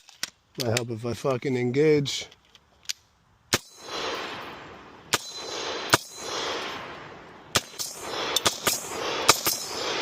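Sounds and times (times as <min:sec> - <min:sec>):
gunshots with rolling echo: 0:03.5 - 0:10.0.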